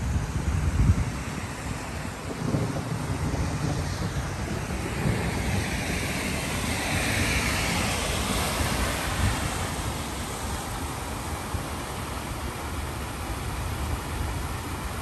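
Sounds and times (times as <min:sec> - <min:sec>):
wind buffeting microphone: 0:00.0 - 0:11.9
floodwater rushing: 0:00.0 - 0:15.0.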